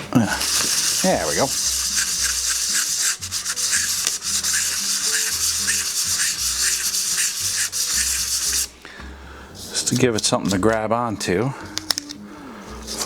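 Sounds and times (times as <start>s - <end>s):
sandpaper scratching: 0.3s - 8.7s.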